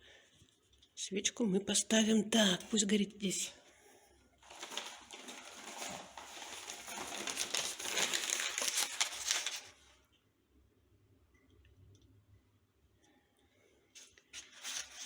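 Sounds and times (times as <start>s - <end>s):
paper being crumpled: 4.4s - 10.0s, 14.0s - 15.0s.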